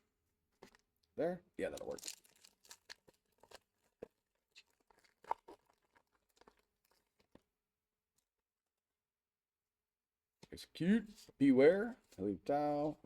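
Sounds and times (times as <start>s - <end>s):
foil wrapper crinkling and tearing: 1.7s - 7.3s.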